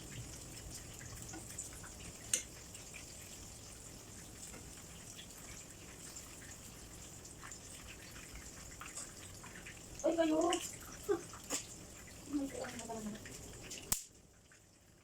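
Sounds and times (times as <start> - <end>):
shrimp sizzling in oil: 0.0 - 15.0
small oil pops: 13.7 - 14.2
sharp crack: 13.9 - 14.1.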